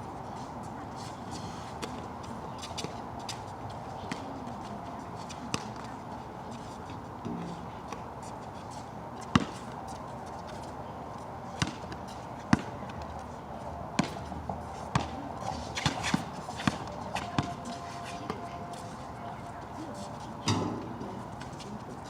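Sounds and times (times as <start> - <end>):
basketball bouncing on wet court: 9.3 - 9.5, 11.6 - 11.8.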